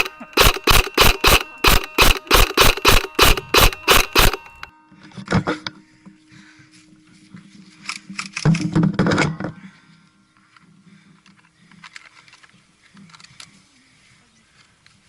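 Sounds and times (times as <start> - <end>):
airsoft gun full-auto burst: 0.0 - 4.7.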